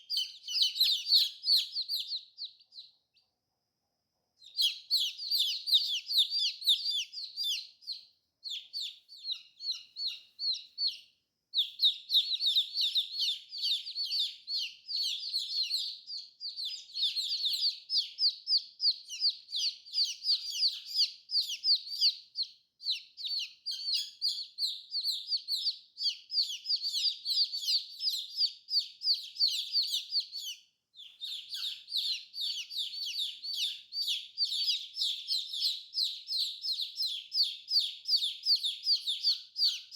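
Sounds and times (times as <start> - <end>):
baby chicks peeping: 0.0 - 3.3, 4.4 - 39.9.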